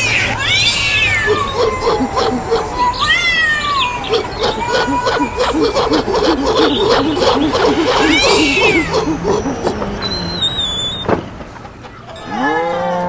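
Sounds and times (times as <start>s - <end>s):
cat meowing: 0.0s - 4.4s
short low animal calls: 0.0s - 11.4s.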